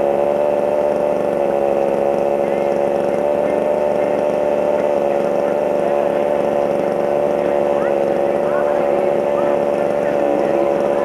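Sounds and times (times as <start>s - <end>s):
small engine humming steadily: 0.0s - 11.0s.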